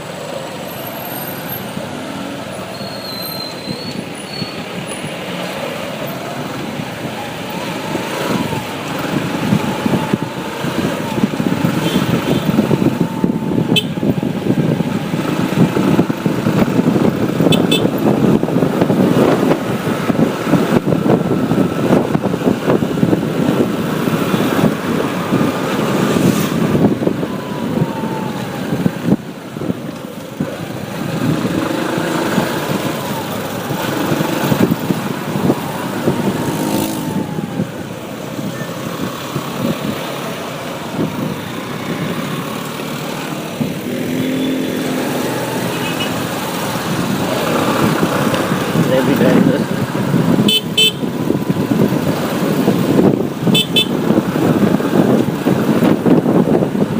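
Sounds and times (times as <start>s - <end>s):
motorbike engine and road noise: 0.0s - 56.9s.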